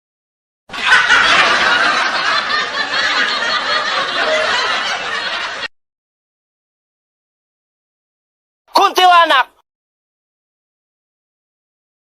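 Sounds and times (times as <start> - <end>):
laughter sound effect: 0.7 - 5.7.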